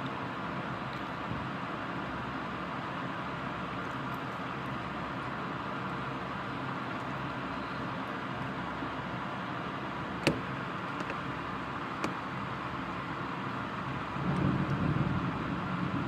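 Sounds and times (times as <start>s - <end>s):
heavy rain hissing: 4.5s - 16.0s
low thunder rumble: 14.1s - 16.0s.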